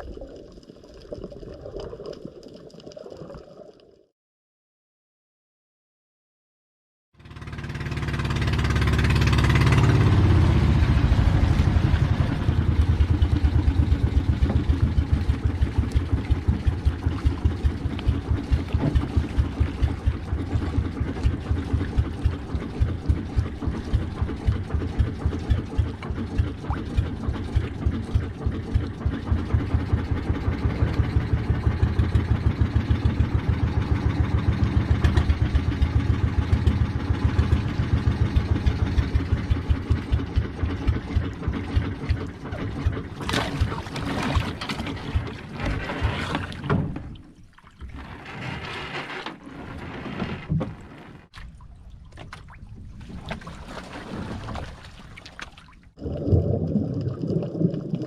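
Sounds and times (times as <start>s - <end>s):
boat engine throbbing: 7.2s - 47.2s.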